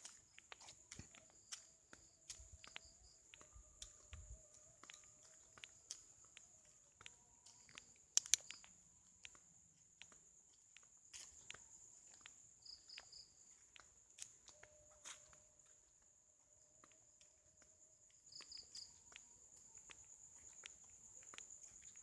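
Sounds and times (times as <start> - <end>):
soft footsteps: 0.0 - 12.4
high-pitched insect trill: 0.0 - 16.1, 16.8 - 22.0.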